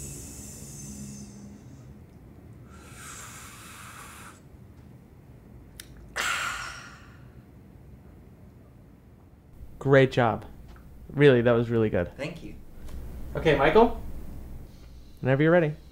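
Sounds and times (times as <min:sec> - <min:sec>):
sharp breathy burst: 0:00.0 - 0:02.0, 0:02.6 - 0:04.5, 0:14.0 - 0:15.2
breathy hiss: 0:00.0 - 0:04.5, 0:09.6 - 0:11.3, 0:12.5 - 0:15.9
small mouth clicks: 0:05.7 - 0:06.2.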